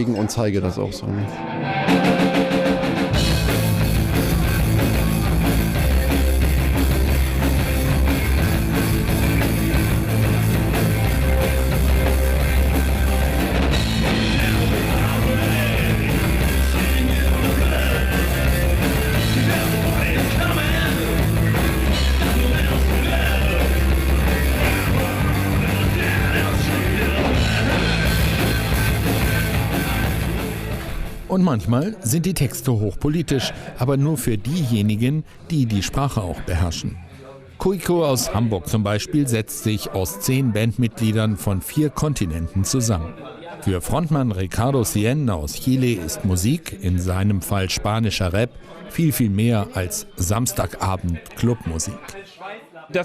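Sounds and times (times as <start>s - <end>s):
loud fast rock band: 1.3s - 31.3s.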